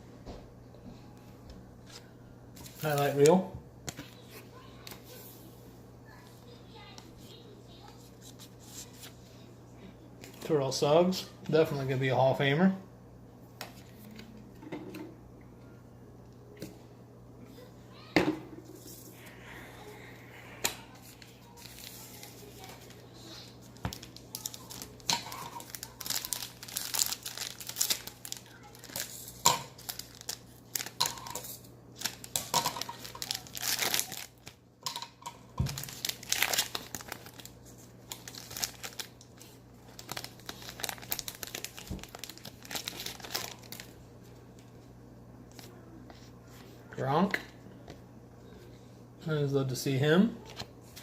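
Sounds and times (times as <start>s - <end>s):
foil wrapper tearing and crinkling: 20.6s - 34.6s, 35.6s - 44.0s.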